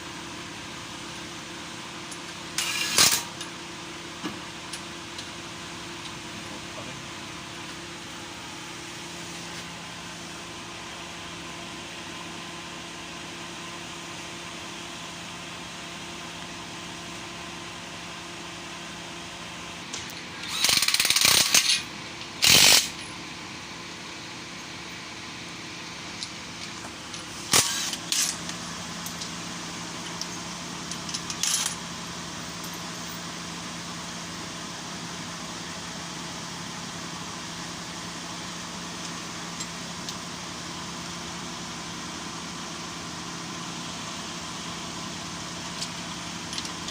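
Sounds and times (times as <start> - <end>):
metal tools clattering: 2.6 - 3.4.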